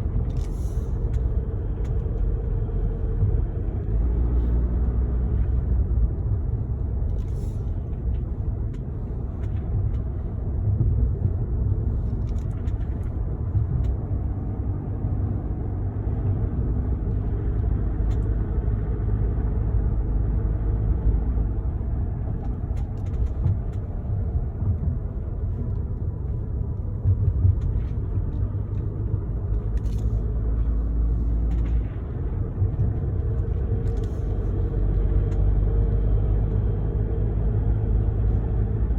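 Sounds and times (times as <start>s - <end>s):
car road and engine rumble: 0.0s - 38.9s.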